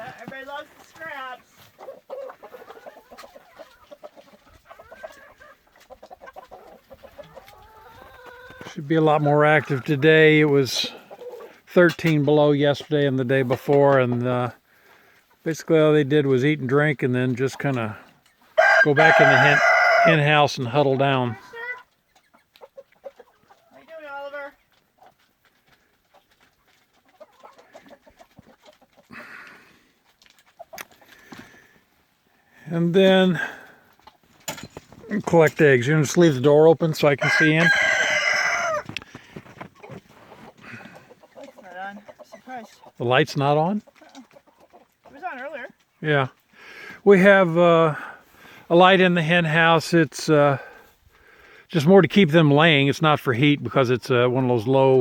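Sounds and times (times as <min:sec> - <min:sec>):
chickens clucking: 0:00.0 - 0:55.0.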